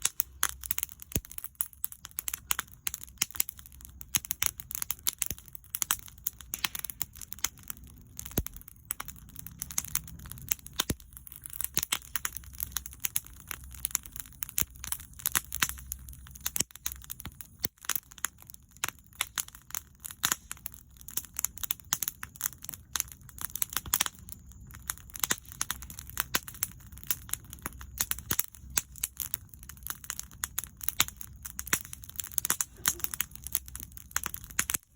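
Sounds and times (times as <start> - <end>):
bonfire crackling and popping: 0.0 - 34.9
low steady rumble: 6.3 - 16.4.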